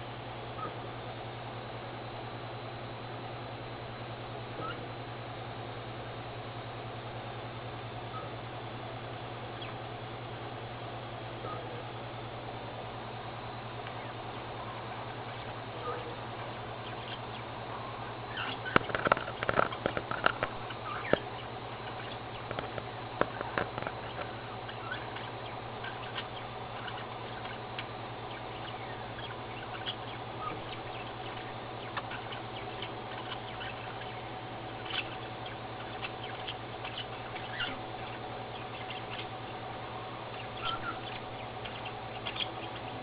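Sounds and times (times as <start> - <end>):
low hum: 0.0 - 43.0
faint bird chirps: 0.5 - 0.8, 3.9 - 5.0, 8.0 - 10.0, 11.4 - 12.3, 13.4 - 43.0
bird beak taps and scratches: 18.4 - 21.3, 22.4 - 24.3.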